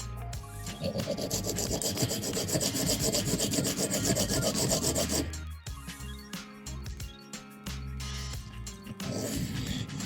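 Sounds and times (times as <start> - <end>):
background music with bass: 0.0 - 10.0.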